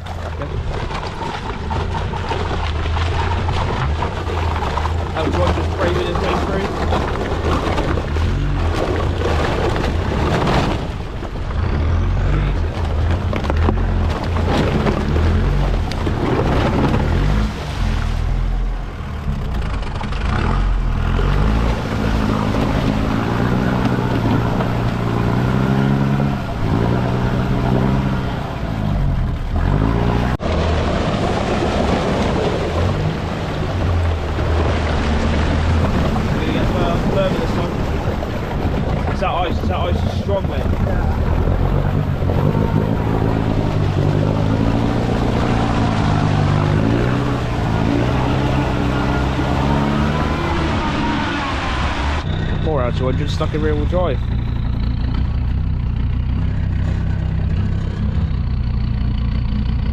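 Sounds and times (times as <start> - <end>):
vehicle engine revving: 0.0 - 59.9
wind and water rushing: 14.2 - 19.3, 21.0 - 52.2.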